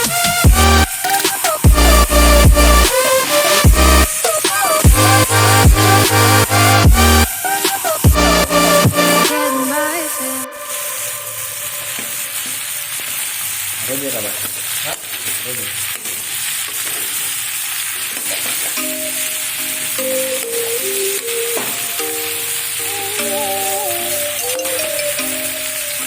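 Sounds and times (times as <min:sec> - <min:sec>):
food sizzling in a pan: 0:09.4 - 0:26.0.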